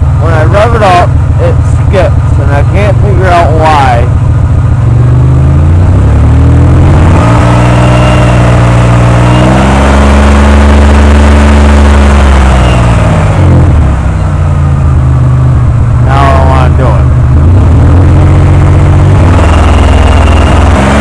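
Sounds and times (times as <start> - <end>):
car engine revving and misfiring: 0.0 - 21.0.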